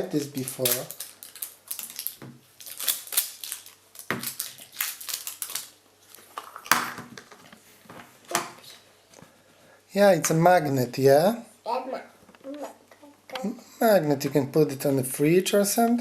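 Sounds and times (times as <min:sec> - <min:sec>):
plastic packaging crinkling: 0:00.0 - 0:07.0.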